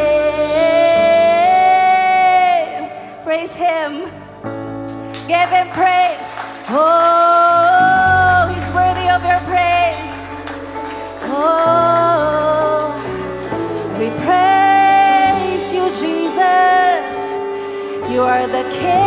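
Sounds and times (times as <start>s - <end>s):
person singing long notes: 6.7s - 19.0s.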